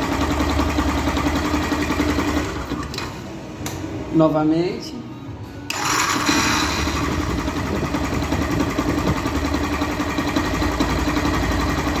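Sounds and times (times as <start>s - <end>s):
motorcycle engine idling: 0.0s - 2.9s, 5.8s - 12.0s.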